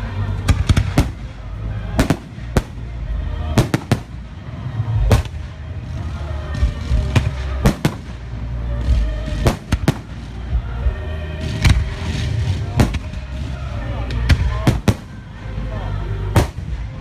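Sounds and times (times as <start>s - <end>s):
low rumble: 0.0s - 17.0s
music playing: 0.0s - 17.0s.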